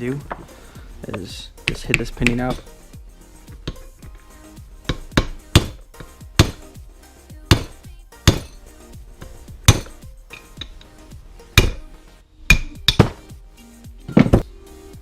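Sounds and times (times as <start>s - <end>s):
hammer striking metal: 1.6s - 2.8s, 4.9s - 6.8s, 7.5s - 8.6s, 9.6s - 10.9s, 11.6s - 11.9s, 12.5s - 13.2s.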